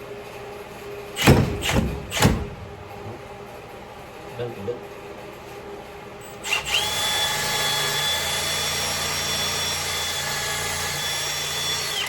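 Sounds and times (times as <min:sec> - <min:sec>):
electric drill whining: 0:06.4 - 0:12.0.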